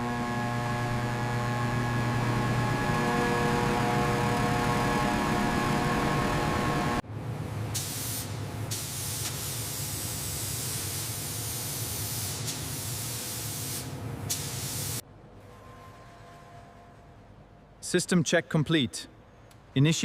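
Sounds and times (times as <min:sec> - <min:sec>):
spraying hiss: 0:07.8 - 0:15.0.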